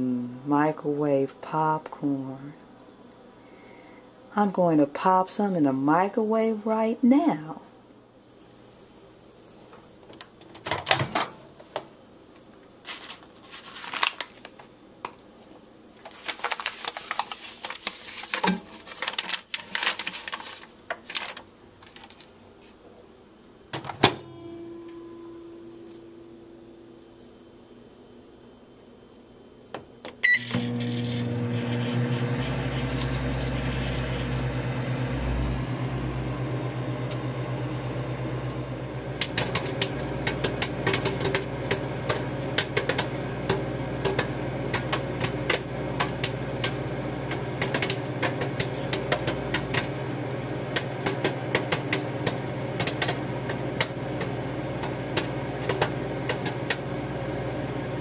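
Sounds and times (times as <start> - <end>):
microwave oven humming: 23.7 - 27.5, 30.0 - 58.0
popcorn popping: 30.6 - 58.0.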